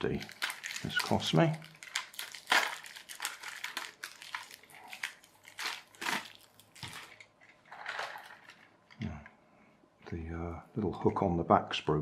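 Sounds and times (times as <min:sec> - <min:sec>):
crinkling and rustling: 0:00.0 - 0:09.4.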